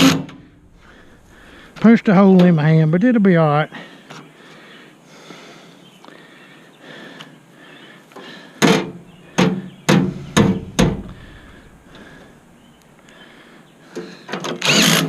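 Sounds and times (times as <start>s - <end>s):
ringing sheet metal bangs: 0.0s - 1.8s, 8.8s - 12.2s.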